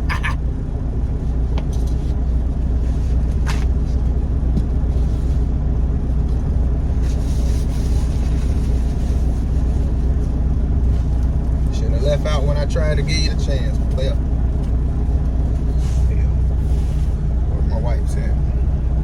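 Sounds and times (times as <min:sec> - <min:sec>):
truck engine idling: 0:00.0 - 0:19.0.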